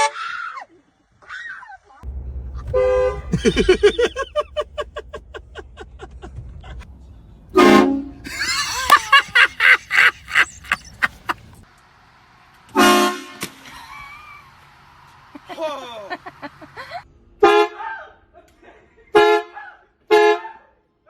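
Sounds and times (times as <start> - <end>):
car horn honking: 2.6 - 4.5, 7.6 - 11.4.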